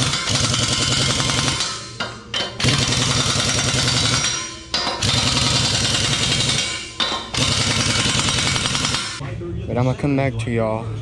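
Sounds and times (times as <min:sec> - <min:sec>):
impact wrench hammering: 0:00.0 - 0:09.2.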